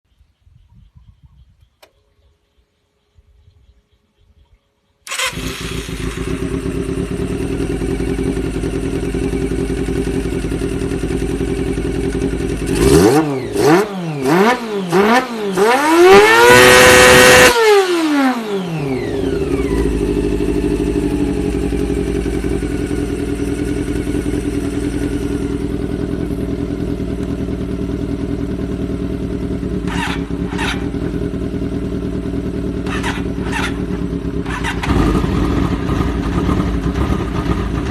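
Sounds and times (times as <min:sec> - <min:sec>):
motorcycle engine idling and revving: 0:00.1 - 0:37.9
motorcycle engine starting: 0:05.0 - 0:37.9.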